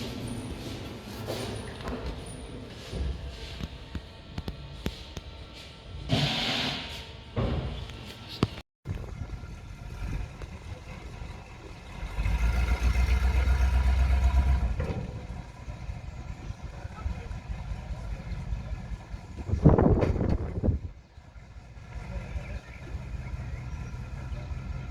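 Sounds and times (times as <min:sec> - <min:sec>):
truck engine running: 0:07.2 - 0:24.9.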